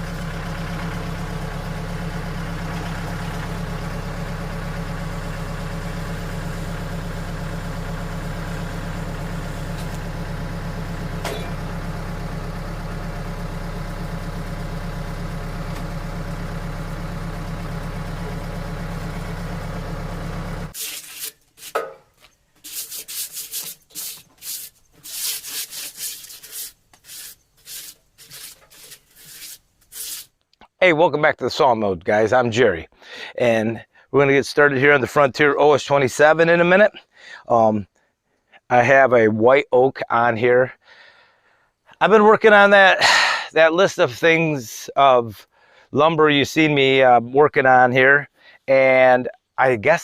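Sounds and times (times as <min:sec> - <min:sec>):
engine running steadily: 0:00.0 - 0:20.8
scraping and knocking: 0:20.8 - 0:30.3.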